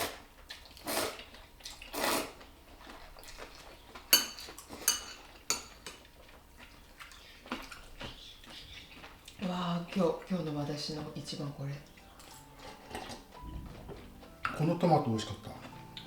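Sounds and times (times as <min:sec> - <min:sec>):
utensils clinking against dishes: 0:04.0 - 0:06.2, 0:11.8 - 0:16.0
utensils scraping dishes: 0:12.2 - 0:13.4.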